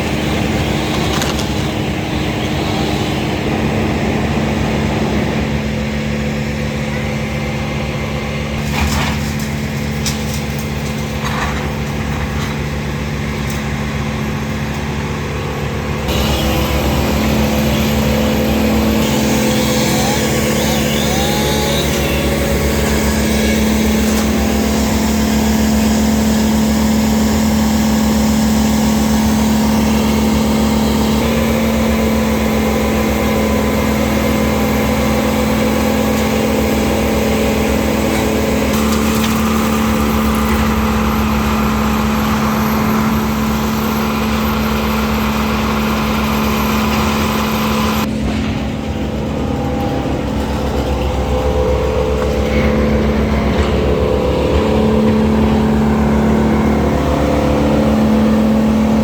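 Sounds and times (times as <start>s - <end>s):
engine running steadily: 0.0s - 59.0s.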